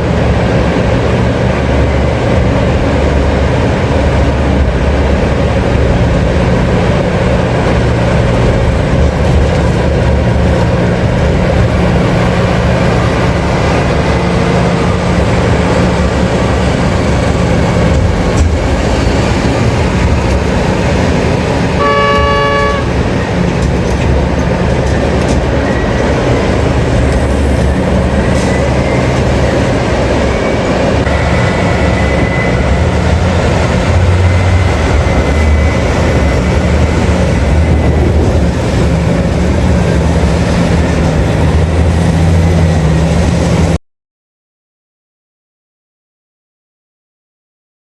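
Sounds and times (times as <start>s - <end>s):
heavy diesel engines running: 0.0s - 43.8s
vehicle horn: 21.8s - 23.0s.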